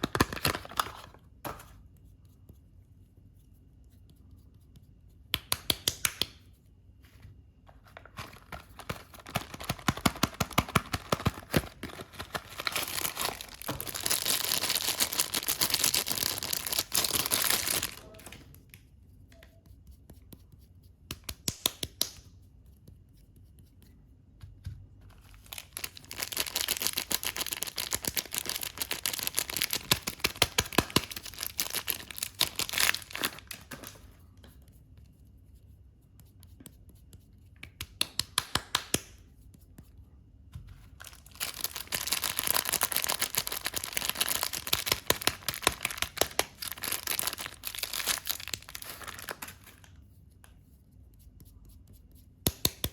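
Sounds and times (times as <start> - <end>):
packaging being torn open: 8.2 - 18.0, 25.4 - 34.0, 41.0 - 49.9.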